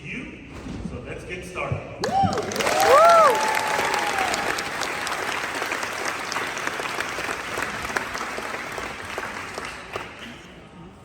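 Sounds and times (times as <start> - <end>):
audience applauding: 2.0 - 10.5.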